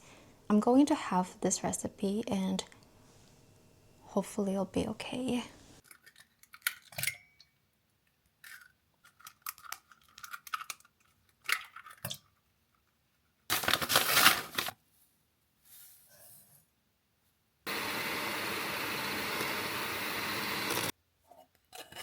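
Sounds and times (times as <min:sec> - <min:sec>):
clicks and light crinkling: 0:05.8 - 0:07.2, 0:08.0 - 0:13.2.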